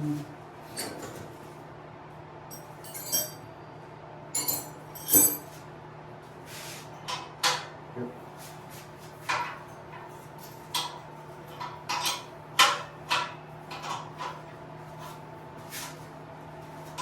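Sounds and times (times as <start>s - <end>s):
metal tools clinking: 2.5s - 3.5s, 4.4s - 5.6s.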